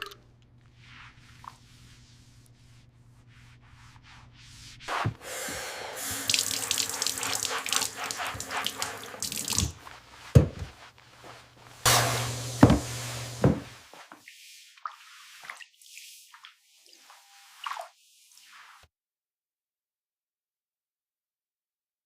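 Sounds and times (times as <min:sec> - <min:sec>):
water running and splashing: 0:05.0 - 0:10.2, 0:11.8 - 0:17.9
water dripping: 0:06.0 - 0:09.8.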